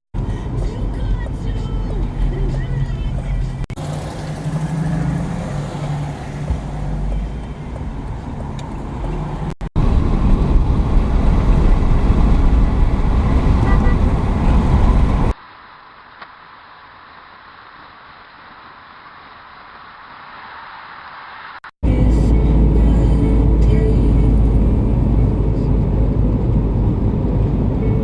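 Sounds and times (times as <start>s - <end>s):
low engine hum: 0.2s - 15.4s, 21.8s - 28.0s
loud car engine running: 2.0s - 15.3s, 21.8s - 28.0s.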